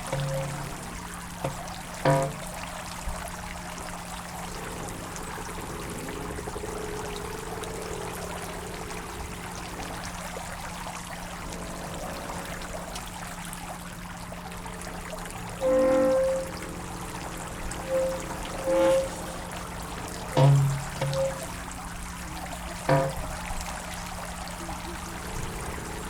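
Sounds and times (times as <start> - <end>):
waterwheel squeaking: 0.0 - 3.1, 15.5 - 24.1
water splashing through waterwheel: 0.0 - 26.0.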